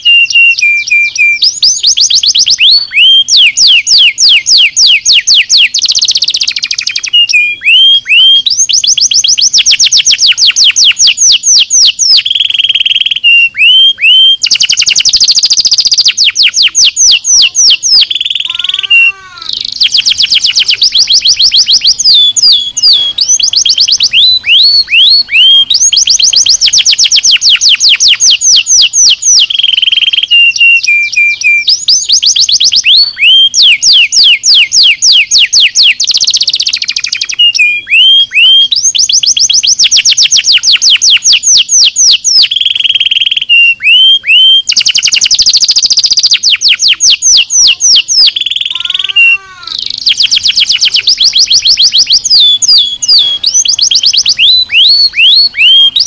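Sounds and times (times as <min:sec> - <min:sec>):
canary singing trills: 0:00.0 - 0:56.0.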